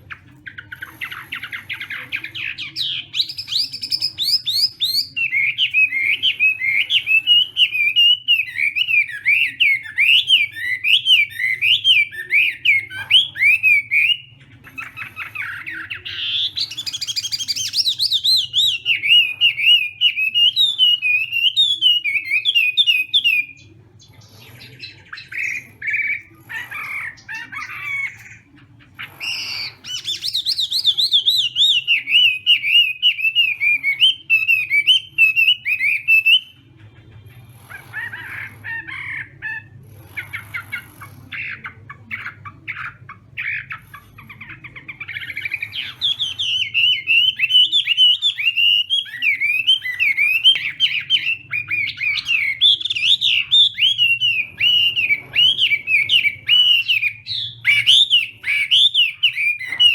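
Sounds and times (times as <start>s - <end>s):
bird chattering: 0.0s - 59.9s
bird singing whistled phrases: 45.0s - 59.9s.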